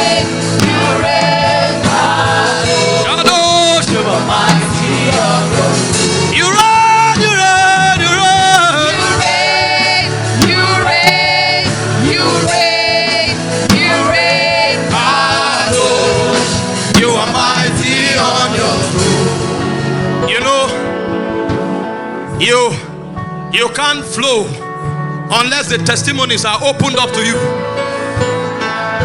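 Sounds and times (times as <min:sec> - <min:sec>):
gospel choir singing: 0:00.0 - 0:20.3
instrumental backing with beat: 0:00.0 - 0:29.0.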